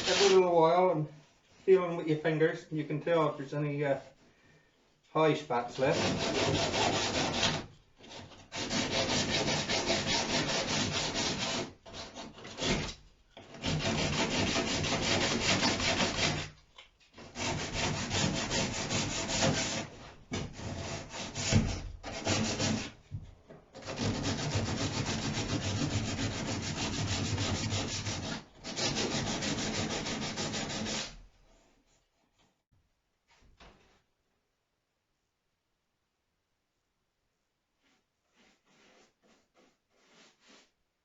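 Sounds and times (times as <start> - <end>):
sandpaper sanding wood: 0.0 - 0.5, 5.8 - 7.6, 8.5 - 12.8, 13.6 - 16.5, 17.3 - 20.0, 20.6 - 23.0, 23.8 - 31.2, 38.2 - 40.7.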